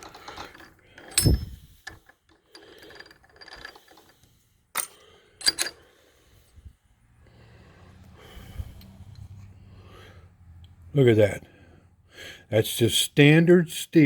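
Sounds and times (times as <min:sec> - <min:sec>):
sharp metallic clinks: 0:01.0 - 0:02.0.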